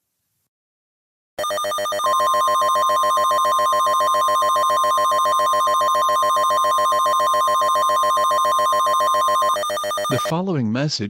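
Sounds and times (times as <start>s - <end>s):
pulsing buzzy alarm tone: 1.4s - 10.3s
steady piercing beep tone: 1.4s - 10.3s.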